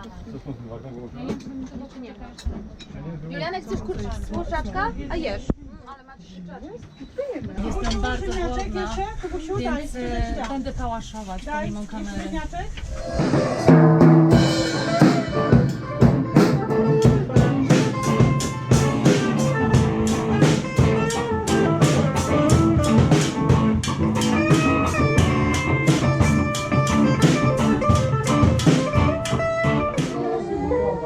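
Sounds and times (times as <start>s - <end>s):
guitar and drums music: 13.0s - 30.5s.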